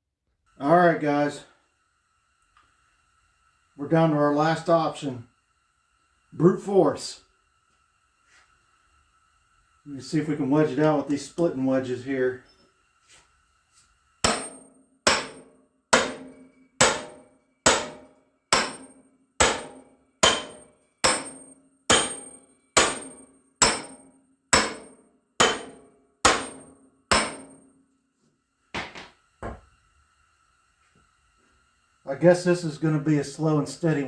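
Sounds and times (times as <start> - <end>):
hammer striking metal wedges: 14.2 - 24.0, 24.6 - 27.6, 28.8 - 29.6.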